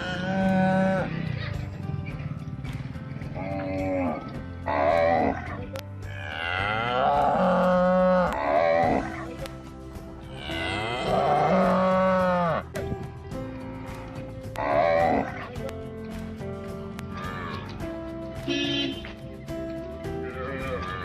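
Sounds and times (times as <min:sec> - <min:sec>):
cows mooing: 0:00.0 - 0:01.6, 0:03.2 - 0:09.3, 0:10.3 - 0:12.7, 0:13.6 - 0:15.5.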